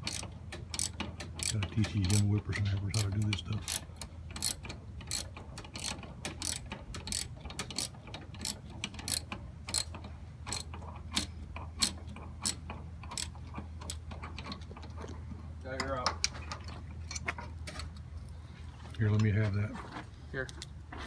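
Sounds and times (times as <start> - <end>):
hand ratchet clicking: 0.0 - 14.1.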